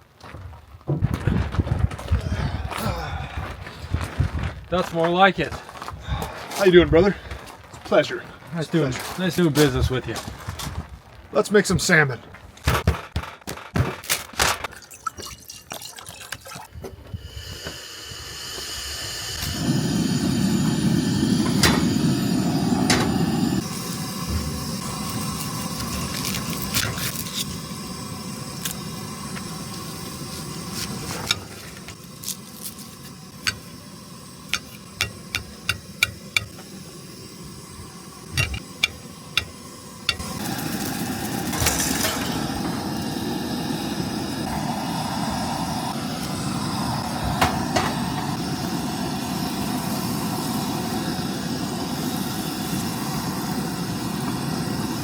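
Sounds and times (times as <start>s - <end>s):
low rumbling noise: 1.2s - 4.8s
cookware and utensils clicking: 38.4s - 40.3s.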